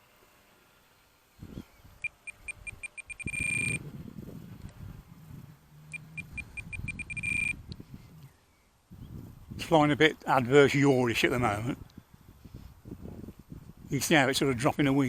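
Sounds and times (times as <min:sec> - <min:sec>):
electronic beeper short beeps: 0:02.0 - 0:03.8, 0:05.9 - 0:07.6
low uneven rumble: 0:03.8 - 0:10.6.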